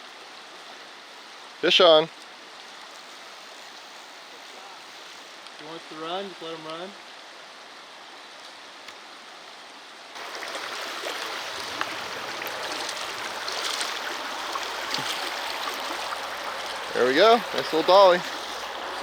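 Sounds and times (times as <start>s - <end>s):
river water rushing over rocks: 10.2s - 19.0s.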